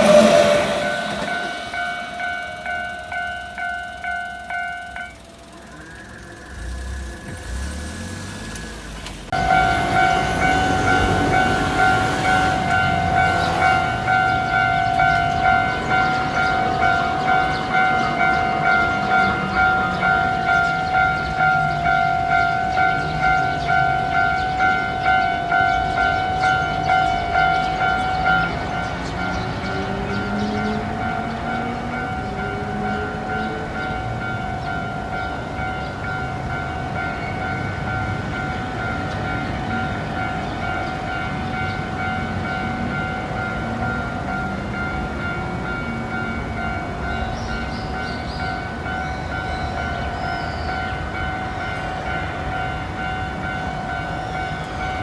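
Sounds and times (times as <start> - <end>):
electric train motor whine: 0.0 - 22.9
level-crossing warning bell: 0.0 - 55.0.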